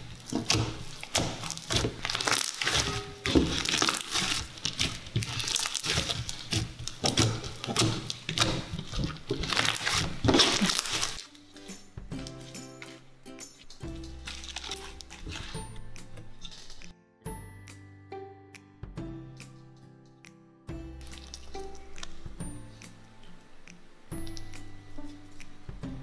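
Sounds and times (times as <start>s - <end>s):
slime being squished: 0.0s - 13.0s, 13.8s - 16.9s, 20.9s - 22.9s
foam balls crackling and clicking: 0.0s - 16.9s, 20.9s - 25.6s
background music: 0.0s - 26.0s.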